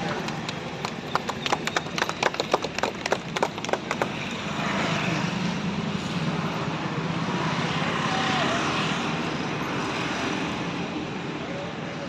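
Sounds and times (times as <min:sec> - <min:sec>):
people clapping unevenly: 0:00.0 - 0:04.5.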